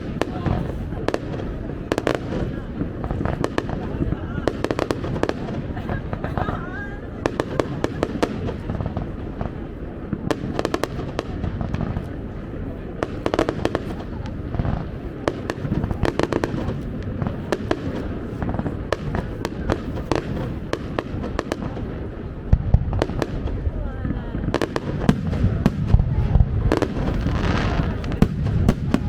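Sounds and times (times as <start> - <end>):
firework bangs and crackling: 0.0 - 29.0
heavy firework boom: 7.2 - 29.0
low rolling rumble: 21.7 - 29.0.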